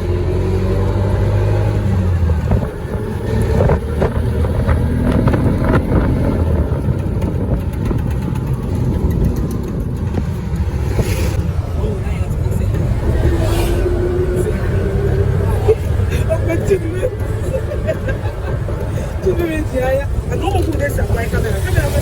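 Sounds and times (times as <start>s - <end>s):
road noise: 0.0s - 22.0s
vehicle engine running: 0.0s - 22.0s
knocks and rattles: 2.1s - 11.6s.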